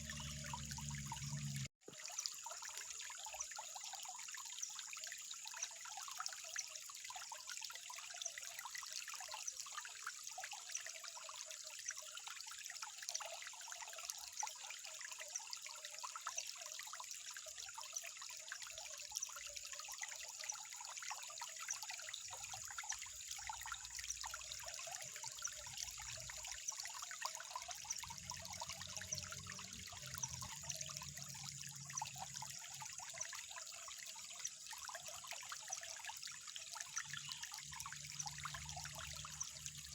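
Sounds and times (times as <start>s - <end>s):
water trickling over stones: 0.0s - 39.9s.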